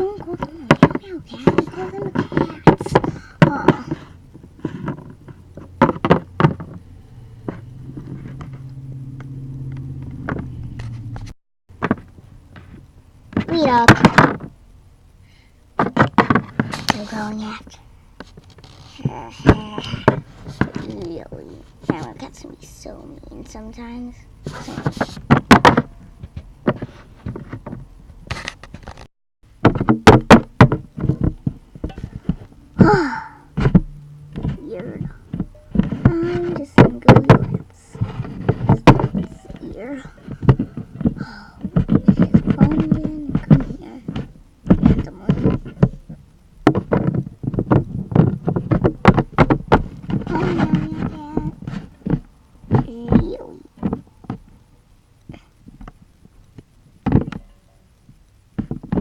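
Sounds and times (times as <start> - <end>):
steady low hum: 0.0 - 59.0
sharp knocks and taps: 0.1 - 14.5, 24.5 - 29.0, 29.6 - 32.5, 33.6 - 54.4, 58.1 - 59.0.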